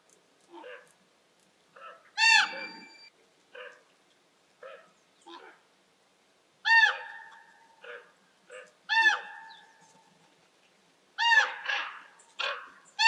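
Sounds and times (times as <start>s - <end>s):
softer short bird calls: 1.8s - 3.1s
large bird calling loudly: 2.2s - 3.1s.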